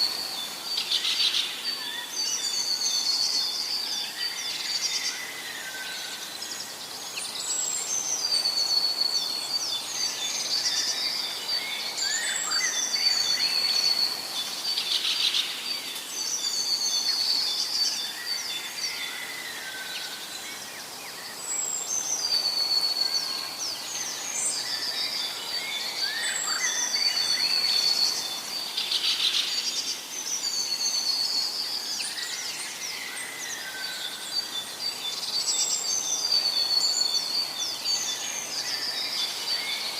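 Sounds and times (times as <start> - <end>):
birds chirping and singing: 0.0 - 39.9
steady background hiss: 0.0 - 39.9.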